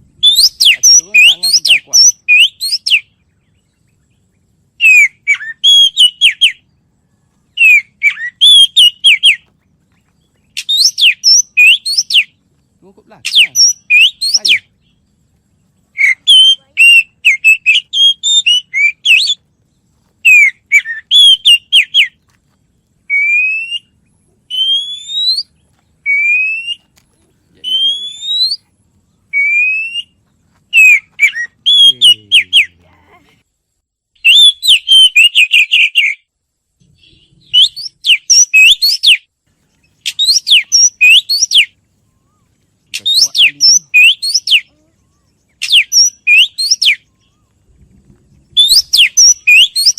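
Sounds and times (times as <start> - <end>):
songbird chirping: 0.0 - 49.9
bird rising whistled notes: 23.1 - 26.9, 36.9 - 39.2, 43.0 - 49.9.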